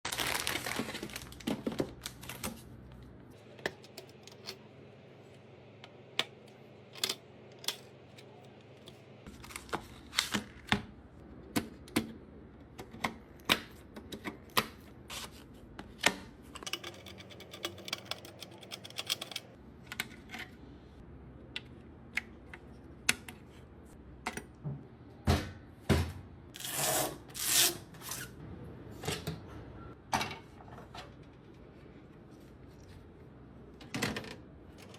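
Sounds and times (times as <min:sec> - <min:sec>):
computer parts clicking and knocking: 0:16.0 - 0:20.2.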